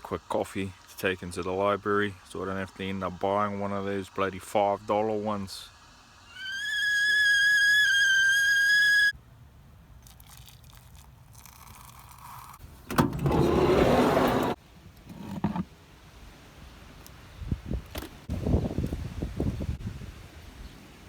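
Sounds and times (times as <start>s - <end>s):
kettle whistling: 6.3s - 9.2s.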